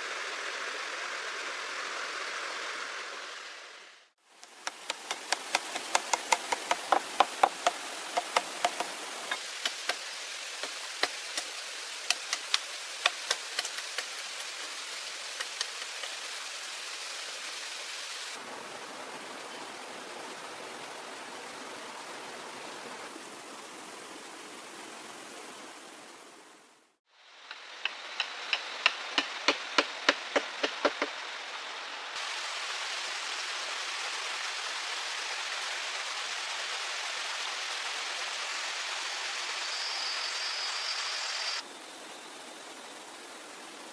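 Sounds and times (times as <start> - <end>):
water hissing: 4.4 - 18.5, 27.3 - 41.7
sharp knocks on wood: 4.6 - 10.0, 27.8 - 31.1.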